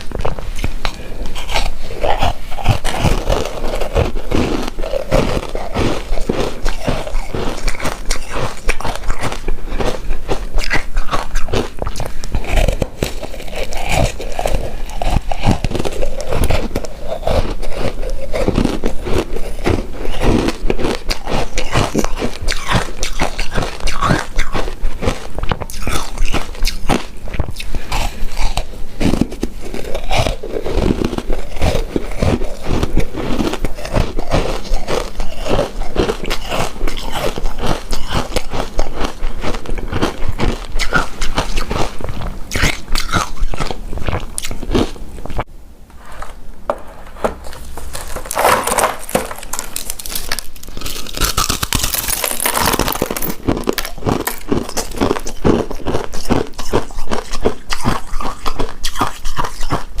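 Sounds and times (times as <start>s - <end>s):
chewing sticky rice cake: 0.0s - 45.5s, 47.3s - 60.0s.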